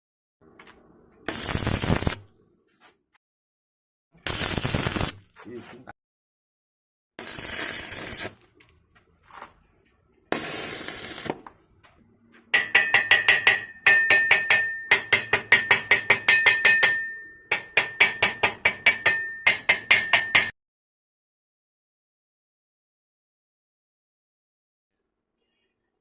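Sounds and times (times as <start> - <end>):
electric arc welding crackle: 1.3 - 2.3, 4.2 - 5.2, 7.2 - 8.4, 10.3 - 11.4
chipping hammer striking steel: 12.6 - 20.5.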